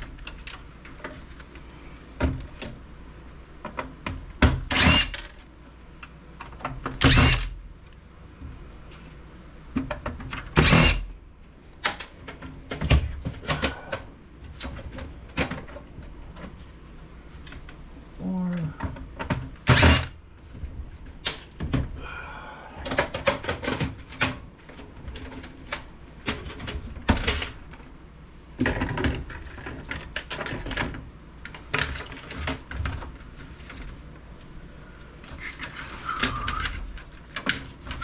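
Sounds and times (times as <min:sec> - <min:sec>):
power screwdriver whirring: 0:04.7 - 0:05.2, 0:07.0 - 0:07.5, 0:10.6 - 0:11.0, 0:19.7 - 0:20.2.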